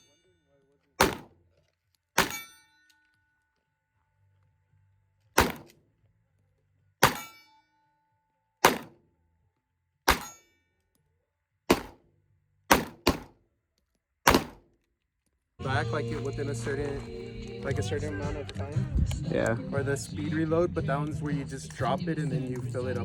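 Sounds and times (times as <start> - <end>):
gunshots: 1.0 - 1.3, 2.2 - 2.4, 5.4 - 5.7, 7.0 - 7.3, 8.6 - 9.0, 11.7 - 12.0, 12.7 - 13.3, 14.3 - 14.6.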